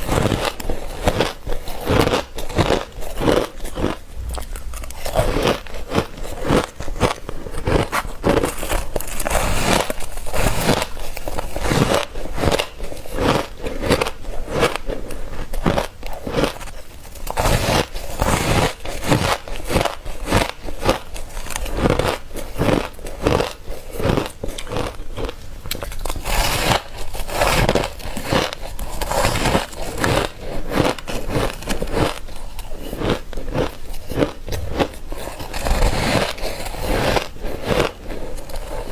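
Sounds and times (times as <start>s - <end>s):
ice being crunched: 26.0s - 37.9s.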